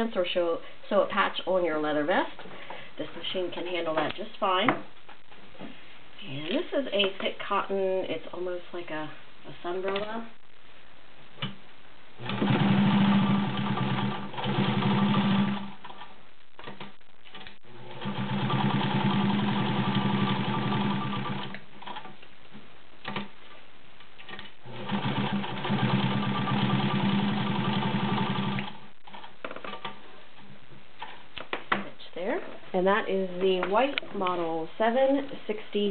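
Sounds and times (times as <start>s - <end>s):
sewing machine stitching: 12.2s - 15.8s, 17.3s - 22.0s, 24.7s - 28.8s.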